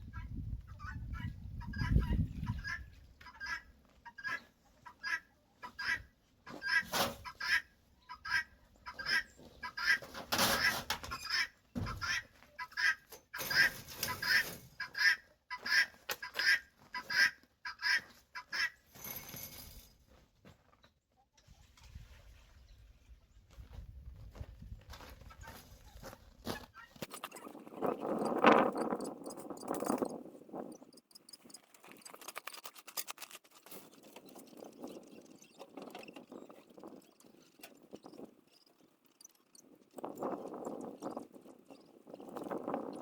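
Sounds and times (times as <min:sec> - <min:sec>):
poultry calling: 0:00.1 - 0:18.8.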